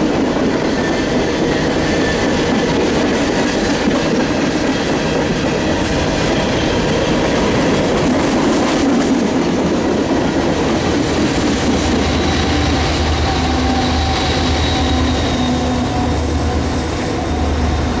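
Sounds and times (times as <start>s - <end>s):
train wheels clattering on rails: 0.0s - 18.0s
faint thin wheel squeal: 12.7s - 17.8s.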